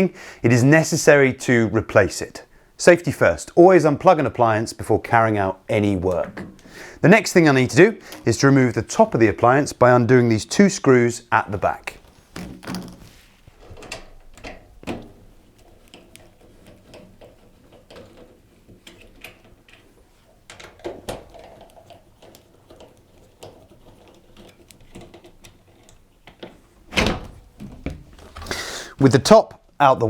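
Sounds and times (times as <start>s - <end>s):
metal panel sliding and lifting: 26.8s - 28.6s.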